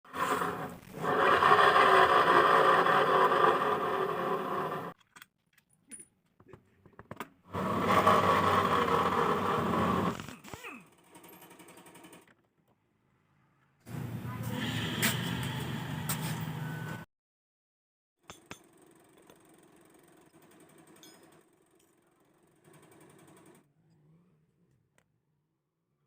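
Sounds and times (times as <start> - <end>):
scooter drive growling: 0.1 - 5.0, 7.5 - 10.2.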